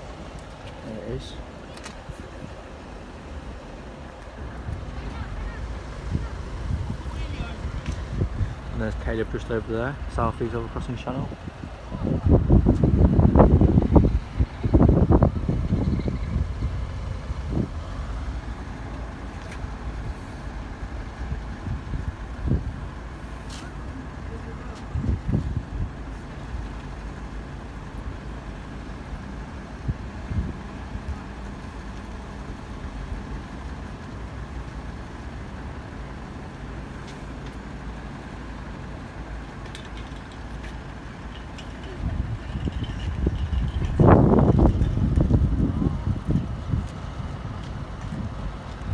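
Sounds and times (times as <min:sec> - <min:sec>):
diesel engine rumble: 0:00.0 - 0:48.9.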